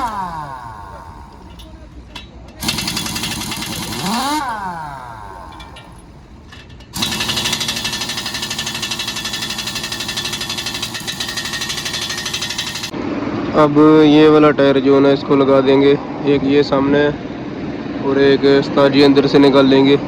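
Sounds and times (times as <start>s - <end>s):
impact wrench rattling: 0.0s - 13.0s.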